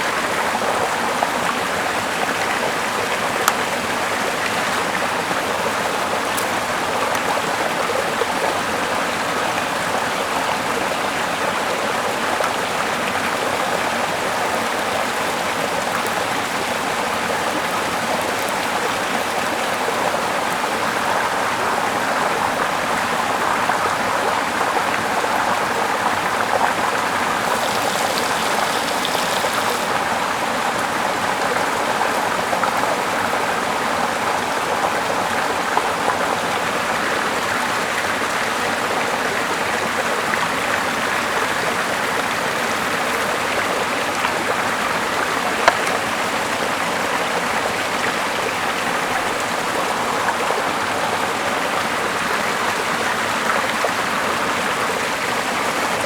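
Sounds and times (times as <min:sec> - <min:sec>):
running water: 0:00.0 - 0:56.0.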